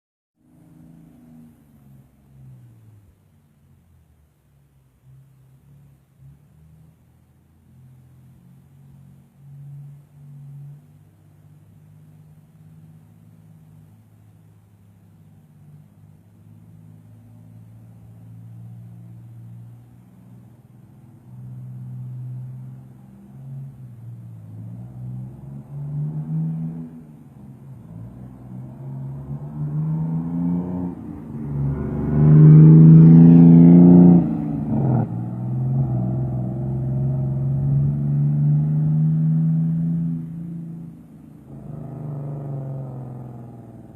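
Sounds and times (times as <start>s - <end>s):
diesel engine revving: 21.2s - 43.9s.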